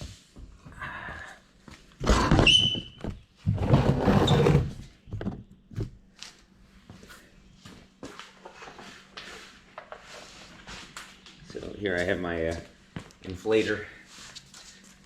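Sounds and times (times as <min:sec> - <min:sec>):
objects clunking and scraping: 0:02.0 - 0:06.0, 0:08.0 - 0:11.3
short high squeak: 0:02.4 - 0:03.0.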